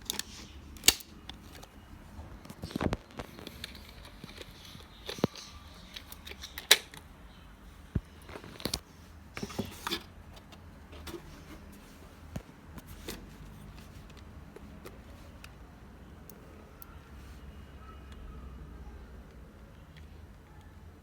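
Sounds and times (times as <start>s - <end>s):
box and plastic rustling: 0.0s - 7.1s, 7.9s - 15.4s.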